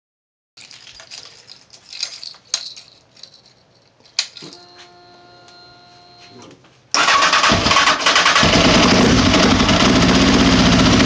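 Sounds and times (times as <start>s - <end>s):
metallic clinking and rattling: 0.6s - 4.7s.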